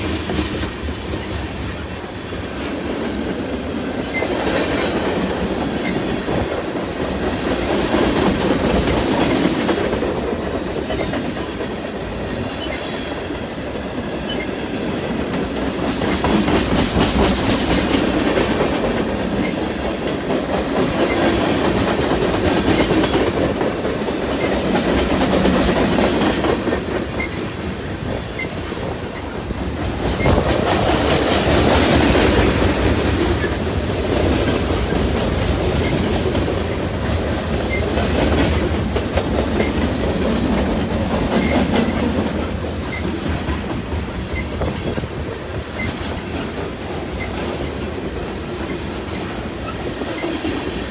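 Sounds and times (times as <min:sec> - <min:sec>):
freight train rumbling past: 0:00.0 - 0:50.9
wheels clicking over rail joints: 0:13.8 - 0:50.9.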